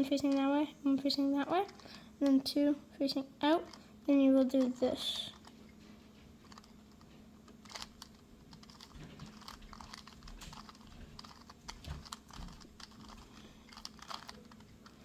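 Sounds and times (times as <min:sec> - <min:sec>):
plastic puzzle cube clicking: 0:07.5 - 0:15.0.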